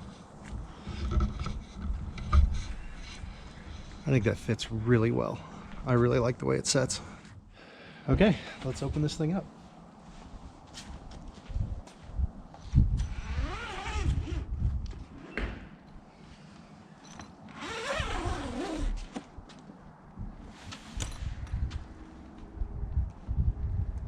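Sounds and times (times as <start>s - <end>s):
zipper rasping open: 13.1s - 14.5s, 17.5s - 19.1s.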